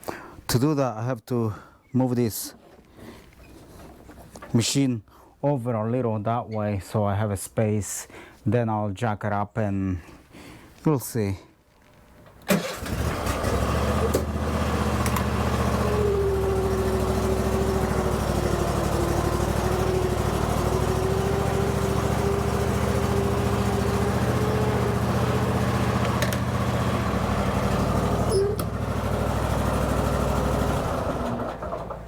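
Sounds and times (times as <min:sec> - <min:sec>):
mower engine running: 0:12.5 - 0:32.0.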